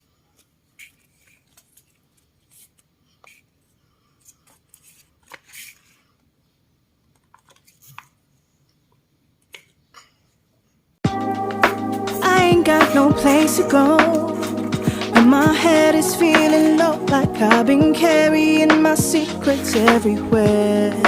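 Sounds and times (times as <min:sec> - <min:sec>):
paper crinkling: 0:00.3 - 0:06.2, 0:07.1 - 0:08.2.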